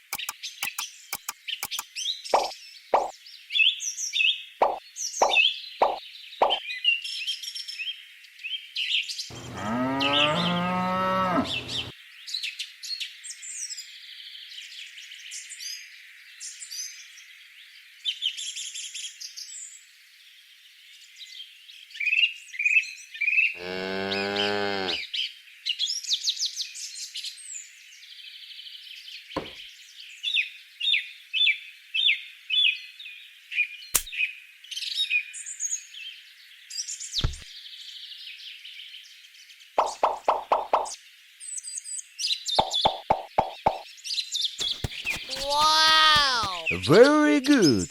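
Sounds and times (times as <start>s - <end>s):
small birds chirping: 0.0s - 6.8s, 11.3s - 11.9s, 42.6s - 43.8s, 44.6s - 47.9s
cow mooing: 9.3s - 11.9s, 23.6s - 25.0s.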